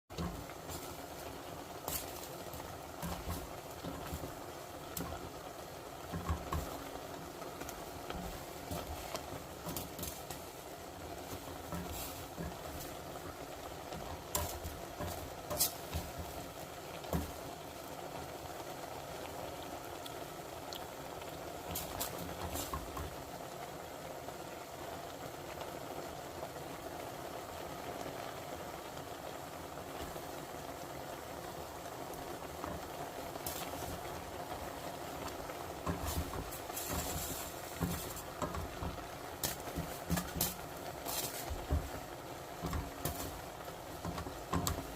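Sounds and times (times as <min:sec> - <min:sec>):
stir-fry sizzling in a pan: 0:00.0 - 0:44.9
sharp clicks and knocks: 0:13.9 - 0:17.4, 0:35.1 - 0:44.9.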